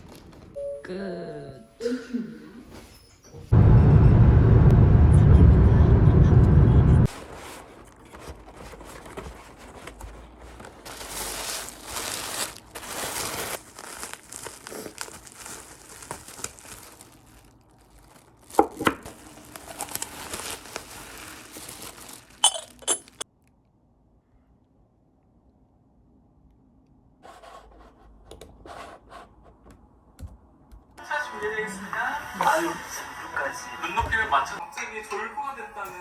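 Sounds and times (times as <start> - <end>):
packaging crinkling and tearing: 7.2 - 23.2.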